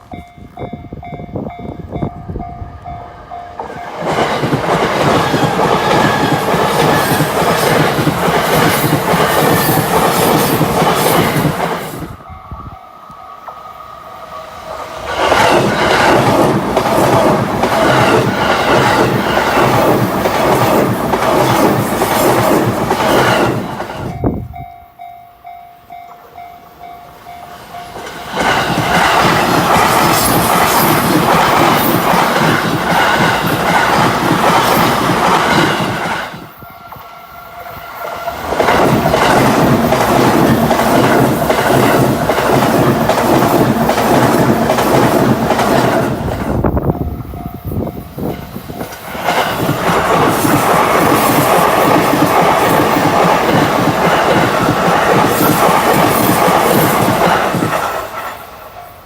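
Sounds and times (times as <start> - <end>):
level-crossing warning bell ringing: 0.0 - 4.3, 12.1 - 14.1, 24.0 - 31.0
trains passing with rapid clatter: 0.0 - 59.0.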